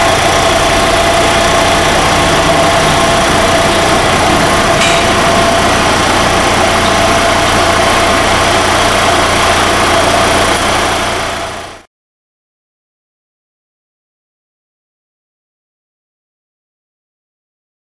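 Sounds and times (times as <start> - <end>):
router spindle whining: 0.0 - 11.8.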